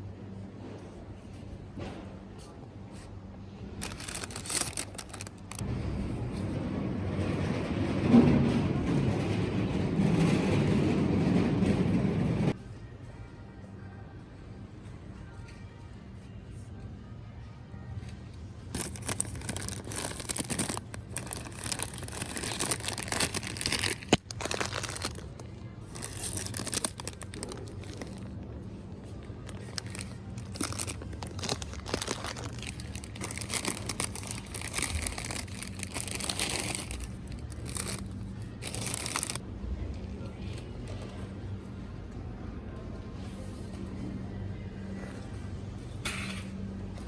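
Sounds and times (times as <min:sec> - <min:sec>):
crinkling and rustling material: 0:03.8 - 0:05.6, 0:18.7 - 0:39.4.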